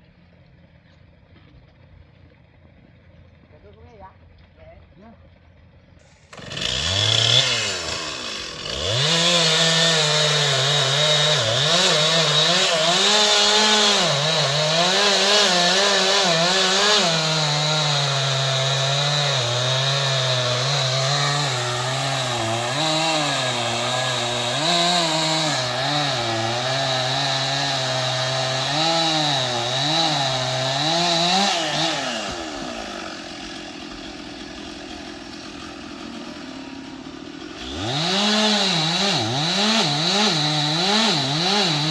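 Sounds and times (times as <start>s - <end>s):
chainsaw cutting wood: 6.0s - 41.9s.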